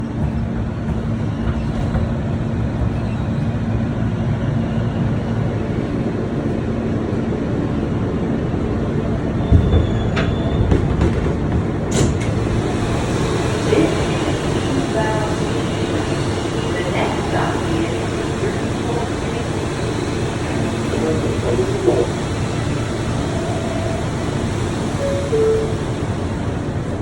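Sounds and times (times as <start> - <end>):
subway train rumbling: 0.0 - 27.0
short high tone: 25.0 - 26.0.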